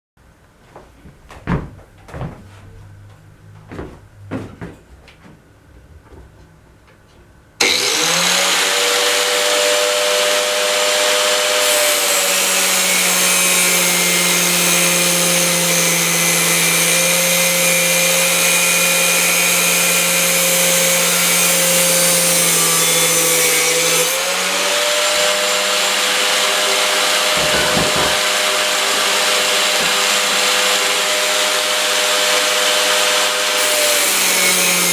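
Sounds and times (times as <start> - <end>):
angle grinder whining: 7.6 - 34.9
grinder disc cutting steel tube: 7.6 - 34.9
knocks and clicks: 27.4 - 28.3.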